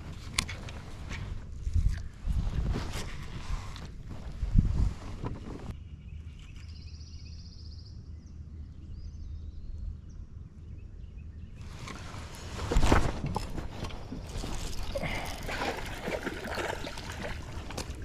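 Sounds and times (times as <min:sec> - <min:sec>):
wind and water rumble: 0:00.0 - 0:05.8, 0:11.4 - 0:18.0
water splashing: 0:14.1 - 0:18.0.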